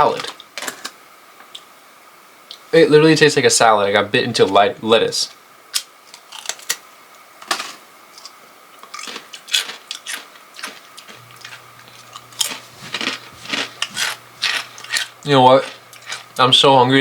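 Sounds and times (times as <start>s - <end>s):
chips being chewed crunchily: 6.1s - 6.8s, 7.4s - 16.6s.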